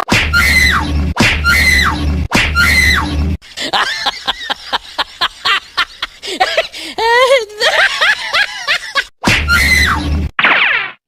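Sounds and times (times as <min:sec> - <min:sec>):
high-pitched squealing cry: 0:00.3 - 0:00.8, 0:01.4 - 0:02.0, 0:02.6 - 0:03.1, 0:09.5 - 0:10.0.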